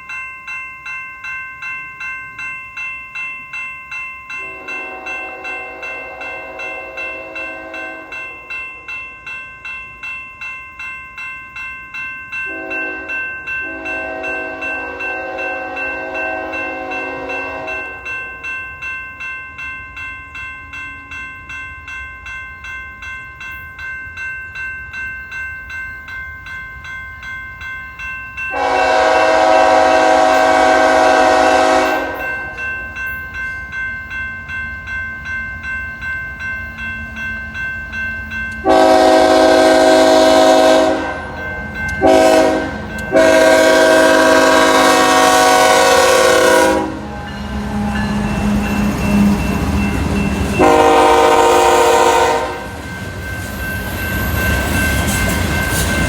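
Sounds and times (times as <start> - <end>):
crossing bell ringing: 0.0 - 56.0
train engine and wheels rumbling: 0.0 - 56.0
train horn blasts: 4.4 - 8.6, 12.5 - 18.2, 28.5 - 32.6, 38.6 - 41.4, 42.0 - 48.5, 50.6 - 52.8.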